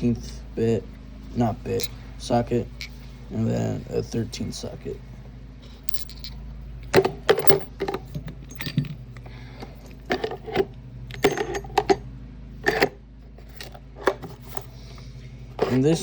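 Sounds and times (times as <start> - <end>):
metal tools clinking in toolbox: 5.9 - 6.4, 7.3 - 7.7, 8.4 - 9.0.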